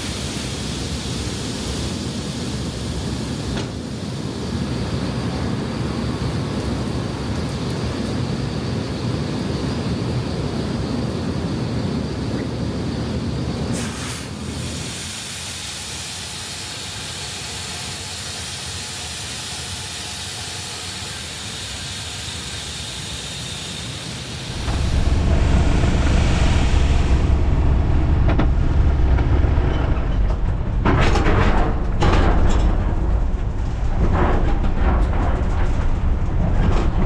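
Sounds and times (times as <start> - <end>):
machinery hissing: 13.8 - 32.5
machinery low rumble: 24.2 - 37.0.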